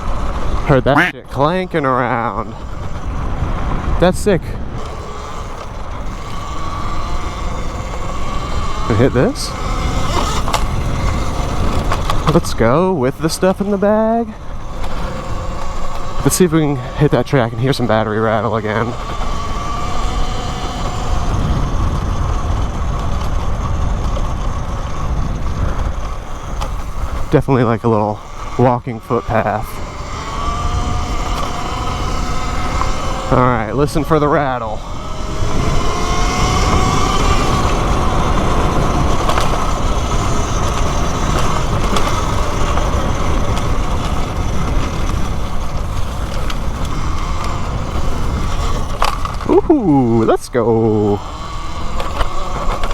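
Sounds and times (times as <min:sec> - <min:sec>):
battery rattling: 0:00.0 - 0:52.9
electric motor whine: 0:00.0 - 0:52.9
tyre noise: 0:00.0 - 0:52.9
wind rumble on microphone: 0:00.0 - 0:52.9.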